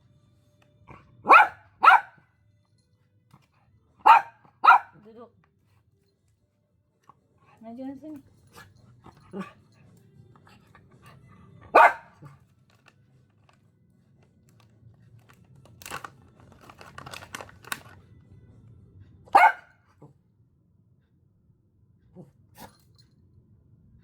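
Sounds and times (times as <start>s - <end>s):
dog barking: 0.9s - 2.3s, 4.0s - 5.1s, 11.6s - 12.4s, 19.3s - 19.8s.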